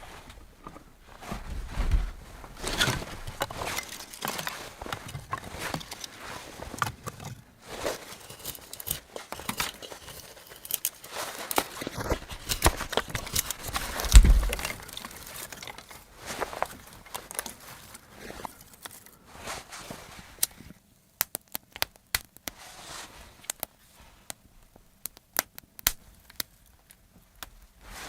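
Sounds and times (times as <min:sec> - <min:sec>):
rustling and crinkling: 0:00.0 - 0:28.0
heavy thump: 0:13.9 - 0:14.7.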